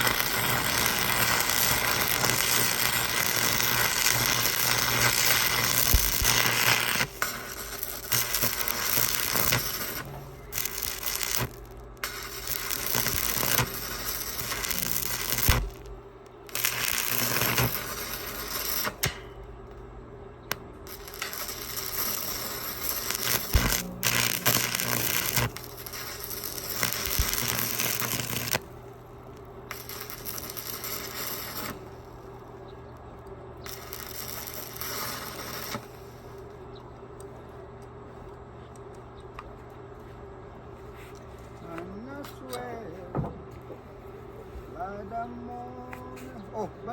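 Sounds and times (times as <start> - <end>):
arc welding hissing crackle: 0.0 - 36.9
steady low hum: 0.0 - 46.9.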